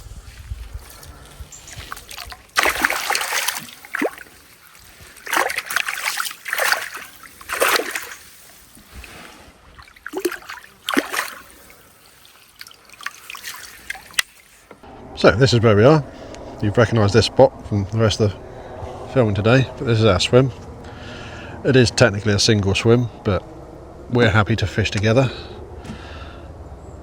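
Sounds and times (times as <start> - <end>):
fish splashing in water: 1.7 - 14.7.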